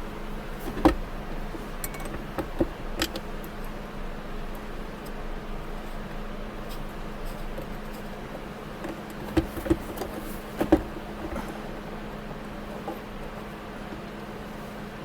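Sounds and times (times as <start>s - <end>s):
steady low hum: 0.0s - 15.0s
armrest knocks and clicks: 0.6s - 1.2s, 1.8s - 3.3s, 8.8s - 11.7s.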